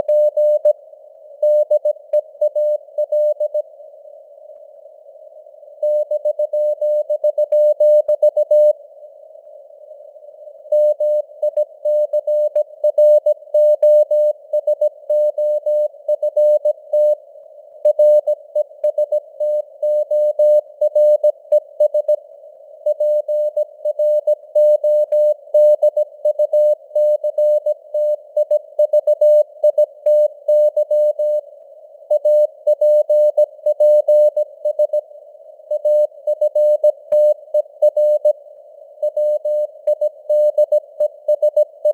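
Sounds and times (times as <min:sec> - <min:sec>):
soft radio hiss: 0:00.0 - 0:41.9
morse code beeps: 0:39.0 - 0:41.9.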